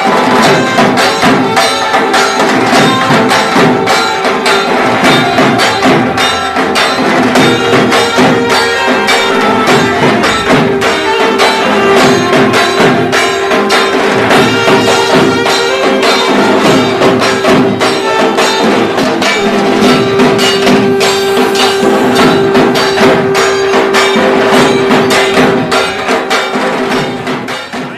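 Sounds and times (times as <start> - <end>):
festive drumming music: 0.0 - 27.9
jingling percussion: 0.0 - 27.9
long held note: 7.4 - 26.4.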